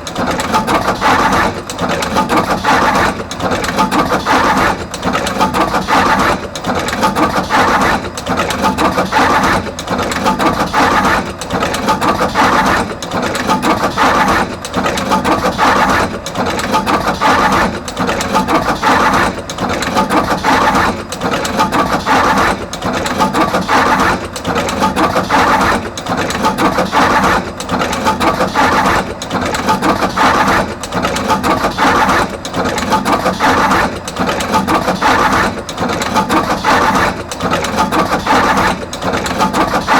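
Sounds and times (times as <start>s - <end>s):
wire processing machine cycling: 0.0s - 39.9s.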